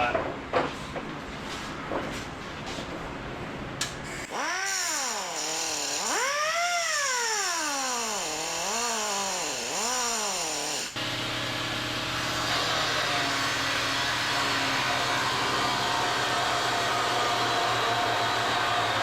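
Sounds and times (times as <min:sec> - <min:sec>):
power tool motor whining: 0:04.1 - 0:19.0.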